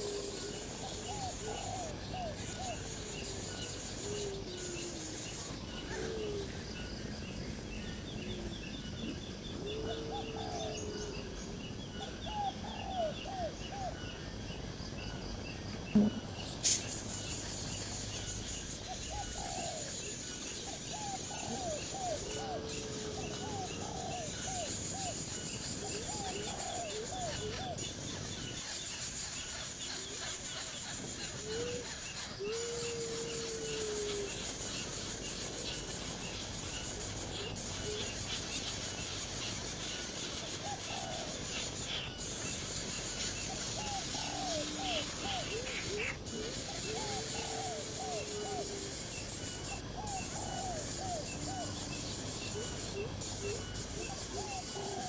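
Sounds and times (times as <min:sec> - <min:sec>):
birds calling: 0:00.0 - 0:55.0
sharp knocks: 0:16.0 - 0:16.4.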